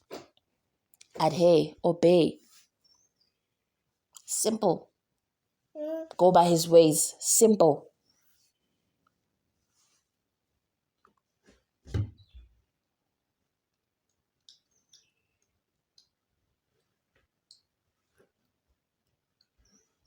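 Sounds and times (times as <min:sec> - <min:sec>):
dull thump: 0:11.8 - 0:12.2.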